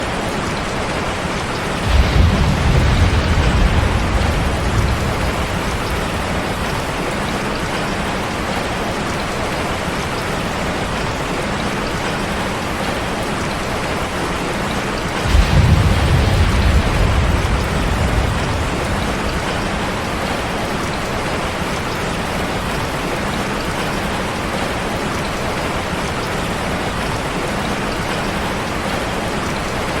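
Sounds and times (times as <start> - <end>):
heavy rain falling: 0.0 - 30.0
thunder rumbling: 1.5 - 9.2, 15.1 - 22.8.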